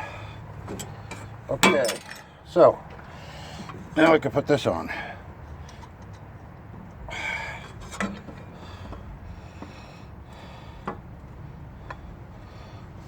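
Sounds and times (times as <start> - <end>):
metal parts clicking: 1.6 - 2.3.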